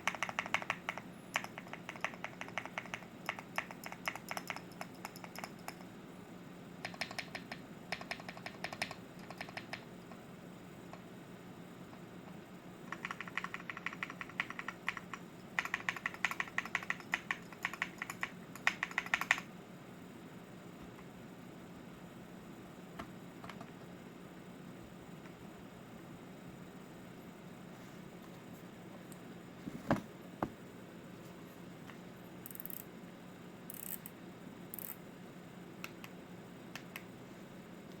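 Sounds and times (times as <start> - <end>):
mechanical keyboard typing: 0.0 - 5.8, 6.8 - 9.9, 12.9 - 19.5, 33.7 - 34.0, 34.8 - 35.0.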